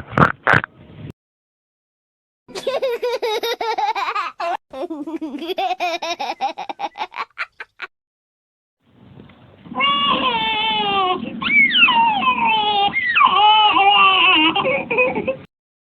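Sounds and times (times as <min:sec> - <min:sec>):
young child wailing: 0:09.7 - 0:14.6.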